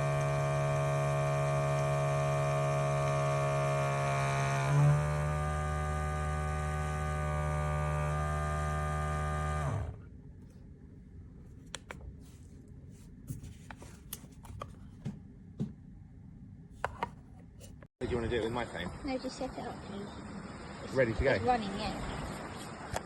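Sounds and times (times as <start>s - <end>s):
humming drone: 0.0s - 10.1s.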